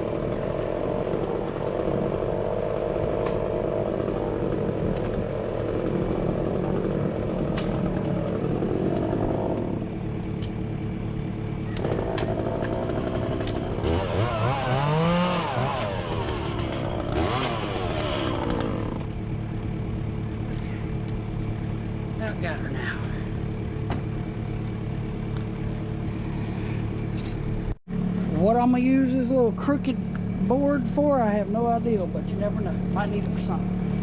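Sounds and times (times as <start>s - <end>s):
chainsaw revving and cutting: 0.0s - 9.8s, 11.8s - 19.2s.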